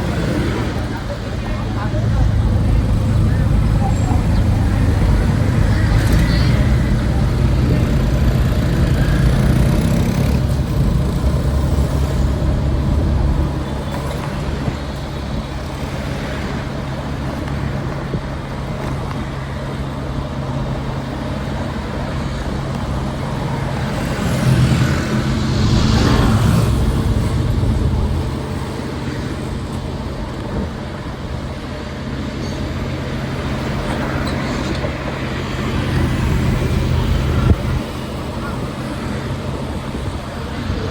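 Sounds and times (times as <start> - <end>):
traffic engines running: 0.0 - 40.9
vehicle passing close: 21.6 - 29.8.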